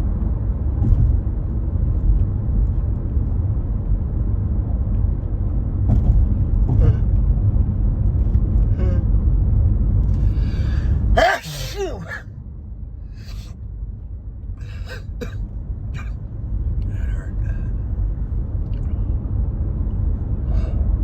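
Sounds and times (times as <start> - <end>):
car cabin rumble: 5.5 - 12.2
man sniffing: 10.3 - 12.2, 13.2 - 13.5, 14.6 - 15.4
man sneezing: 10.6 - 12.2, 13.2 - 13.5, 14.6 - 15.4.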